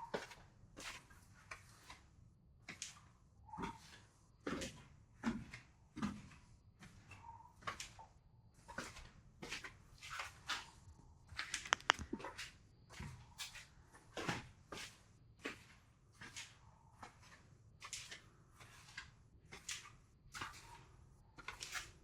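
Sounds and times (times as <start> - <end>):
footsteps walking: 11.6 - 12.2
sharp clicks: 11.6 - 12.2.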